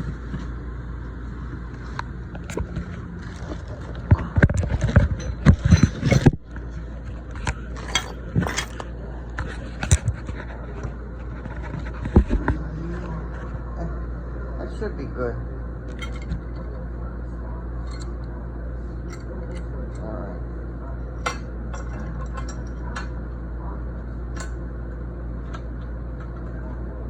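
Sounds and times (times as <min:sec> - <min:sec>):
tools knocking and scraping: 0:02.4 - 0:06.4, 0:07.3 - 0:10.5, 0:15.9 - 0:16.4, 0:21.3 - 0:23.1.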